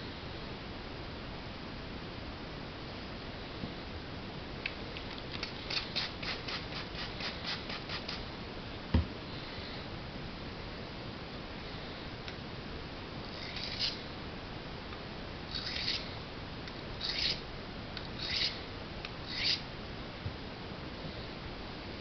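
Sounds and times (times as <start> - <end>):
knife scraping on whetstone: 5.6 - 8.2, 13.3 - 14.0, 15.5 - 16.1, 17.0 - 17.4, 18.2 - 18.6, 19.3 - 19.6.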